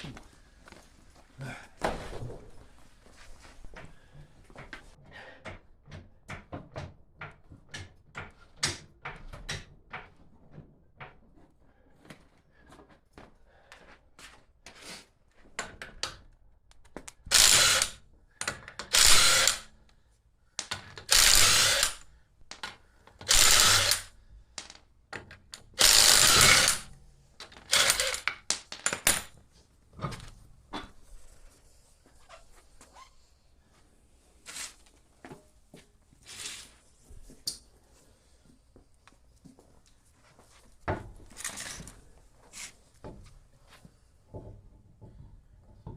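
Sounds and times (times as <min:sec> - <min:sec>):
impact wrench bursts: 0:17.3 - 0:18.0, 0:18.8 - 0:19.7, 0:21.0 - 0:22.1, 0:23.2 - 0:24.1, 0:25.8 - 0:26.9, 0:27.7 - 0:28.3
ratchet clicking: 0:17.3 - 0:18.0, 0:18.9 - 0:19.7, 0:21.1 - 0:22.0, 0:23.3 - 0:24.1, 0:25.8 - 0:26.9, 0:27.7 - 0:28.3.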